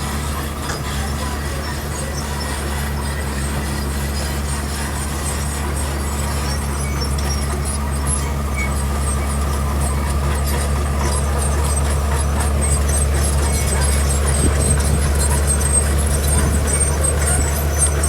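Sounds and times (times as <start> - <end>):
heavy diesel engine droning: 0.0 - 18.0.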